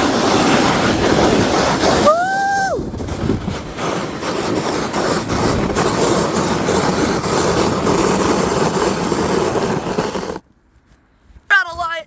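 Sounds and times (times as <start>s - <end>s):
sled scraping over snow: 0.0s - 10.4s
wind on microphone: 0.0s - 10.4s.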